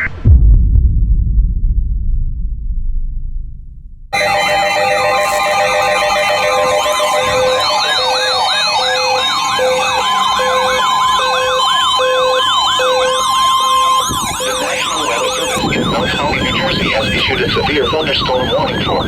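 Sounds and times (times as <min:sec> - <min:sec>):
steady electronic tone: 0:00.0 - 0:10.7
electronic sirens wailing: 0:04.1 - 0:19.0.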